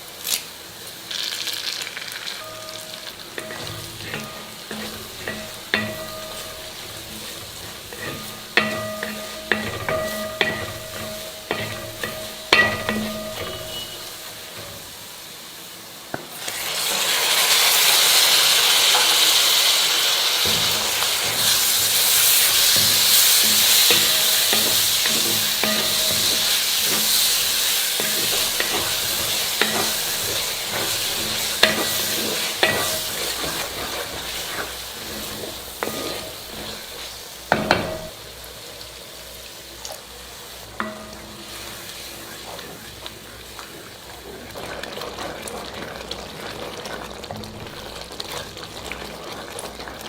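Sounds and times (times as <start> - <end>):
food sizzling in hot oil: 0.0 - 50.0
spoon scraping and tapping pan: 2.4 - 14.9, 20.4 - 38.2, 40.8 - 41.8.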